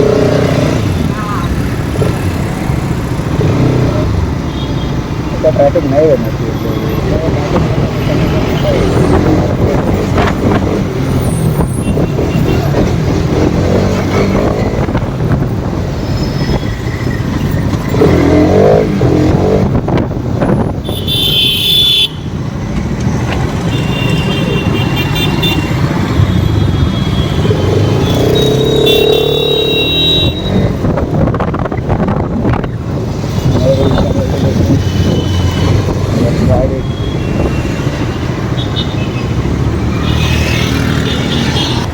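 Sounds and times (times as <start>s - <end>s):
wind noise on microphone: 8.9s - 18.1s, 18.8s - 21.1s, 30.0s - 38.5s
vehicle horns: 20.6s - 22.4s, 23.5s - 30.8s, 33.4s - 41.9s
motorcycle engine: 32.5s - 41.9s.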